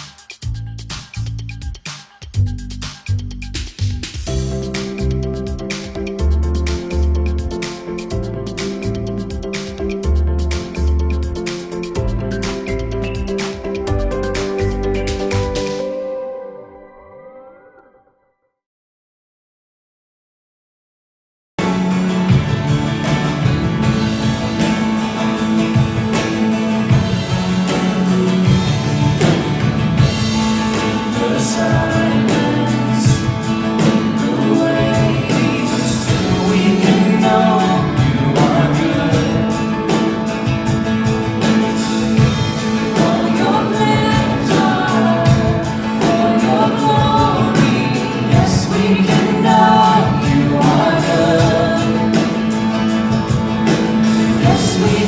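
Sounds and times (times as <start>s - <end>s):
band playing worship music: 4.3s - 16.2s, 21.6s - 55.0s
voices singing: 22.6s - 55.0s.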